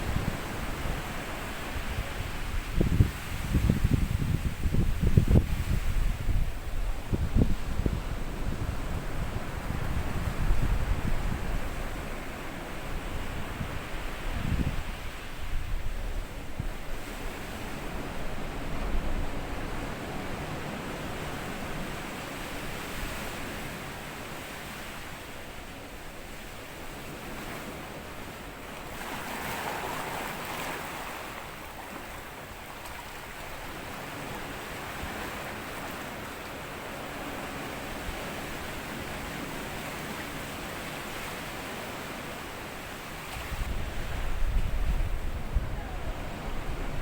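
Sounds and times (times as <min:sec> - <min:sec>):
wind buffeting microphone: 0:00.0 - 0:21.6, 0:43.3 - 0:47.0
sea waves washing onto beach: 0:00.0 - 0:47.0
wave breaking: 0:28.8 - 0:36.2.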